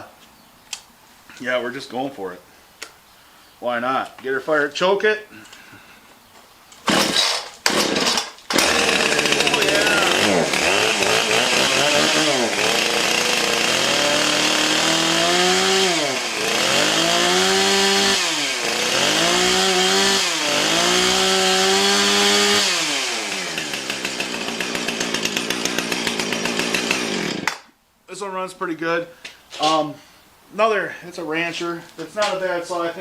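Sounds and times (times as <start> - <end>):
chainsaw revving and idling: 6.8 - 27.7.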